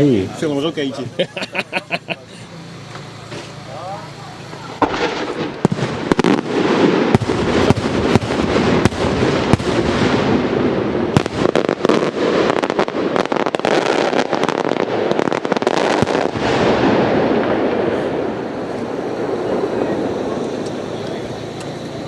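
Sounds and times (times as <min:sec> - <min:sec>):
dense firework crackle: 0:02.5 - 0:22.0
firework shells cracking: 0:04.4 - 0:22.0.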